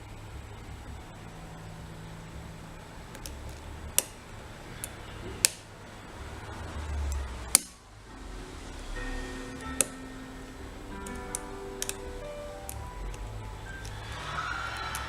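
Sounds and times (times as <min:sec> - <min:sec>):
faint music: 0:00.0 - 0:15.0
lock picks clicking: 0:03.1 - 0:05.7, 0:11.0 - 0:14.0.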